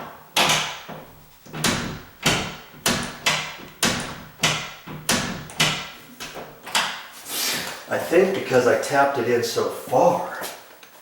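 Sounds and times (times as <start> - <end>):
door latch knocking strike plate: 0.4 - 7.0.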